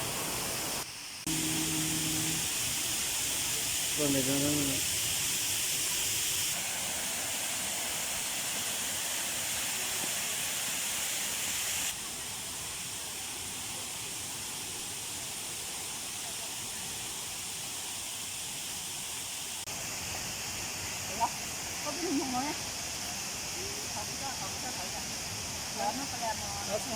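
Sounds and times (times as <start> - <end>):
waterfall rushing: 0.0 - 12.8.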